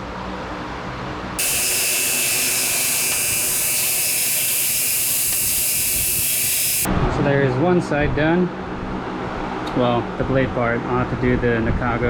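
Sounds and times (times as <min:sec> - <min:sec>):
belt grinder grinding steel: 0:01.4 - 0:06.9.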